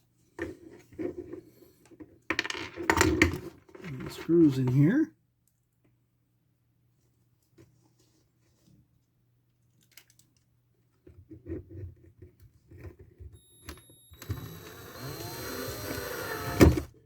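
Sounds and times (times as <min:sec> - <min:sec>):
power drill driving screw: 0:13.4 - 0:16.9.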